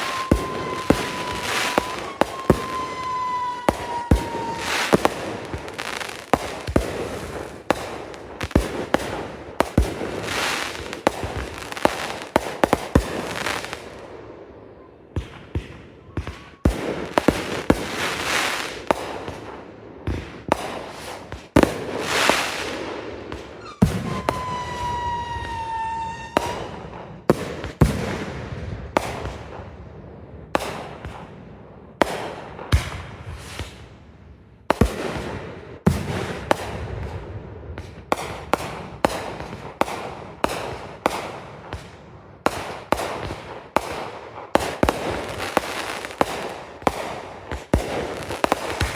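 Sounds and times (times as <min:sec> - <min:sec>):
fireworks hissing crackle: 0:00.0 - 0:09.1, 0:09.7 - 0:13.8, 0:23.5 - 0:26.6
fireworks bangs: 0:00.0 - 0:34.0, 0:34.6 - 0:48.9.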